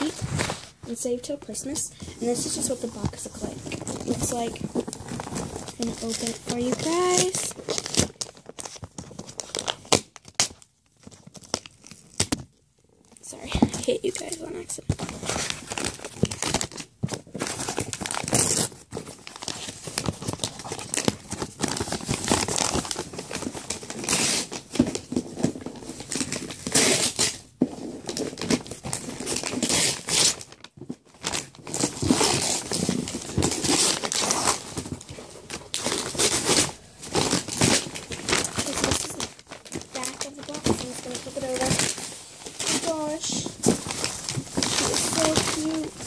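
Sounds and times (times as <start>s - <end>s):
paper packaging crinkling: 0.0s - 12.5s, 13.6s - 46.0s
paper tearing: 26.6s - 27.4s, 44.0s - 46.0s.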